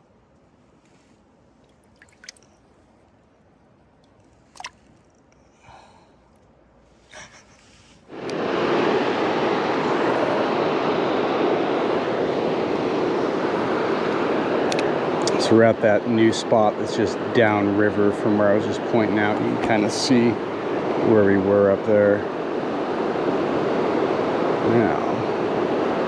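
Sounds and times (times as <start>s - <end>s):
river water rushing: 1.8s - 2.6s, 4.6s - 4.9s.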